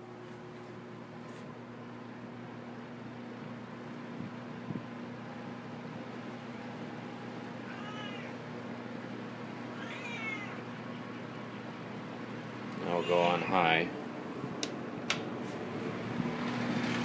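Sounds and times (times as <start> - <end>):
box fan running: 0.0 - 17.0
cat meowing: 7.6 - 8.4, 9.6 - 10.7, 12.8 - 13.6.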